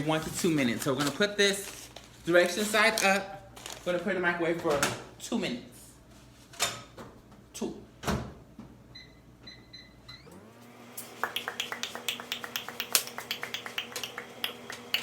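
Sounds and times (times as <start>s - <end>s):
microwave humming: 10.1s - 15.0s.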